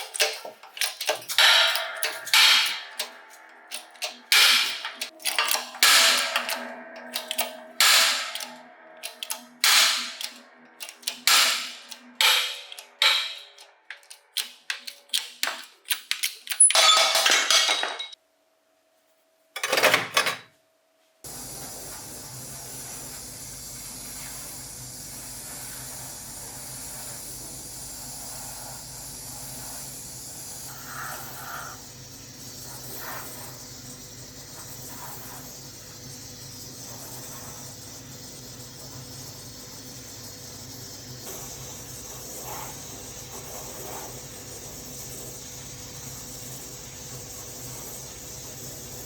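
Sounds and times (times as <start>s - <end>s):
steady hiss: 21.3s - 49.0s.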